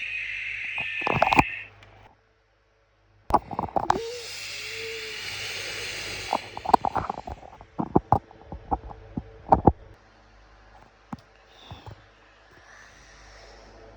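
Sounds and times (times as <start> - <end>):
breathy hiss: 3.8 - 8.1, 11.4 - 13.9.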